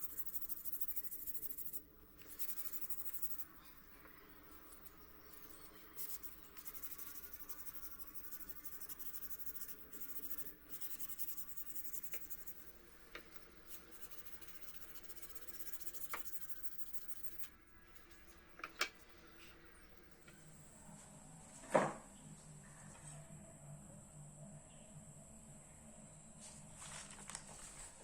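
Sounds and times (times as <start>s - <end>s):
sandpaper rubbing: 0.0s - 3.5s, 4.8s - 12.7s, 13.7s - 17.5s.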